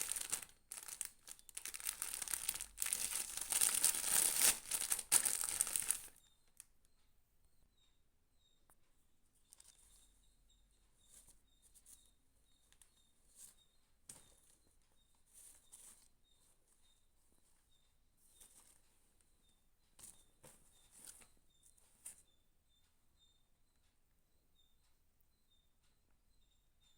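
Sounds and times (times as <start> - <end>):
faint packaging rustles: 0.0 - 6.6.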